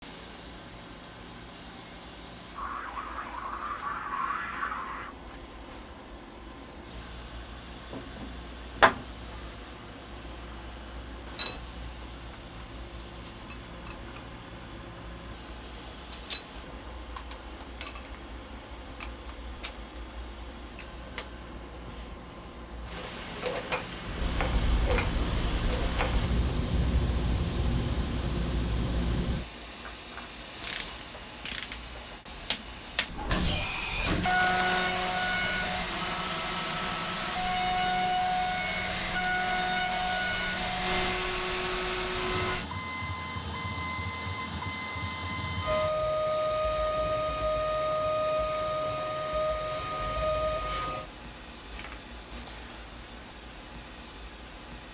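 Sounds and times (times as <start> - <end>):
high spindle whine: 2.3 - 5.5, 24.1 - 29.4, 34.0 - 51.1
low rumble of cutting: 24.1 - 29.4.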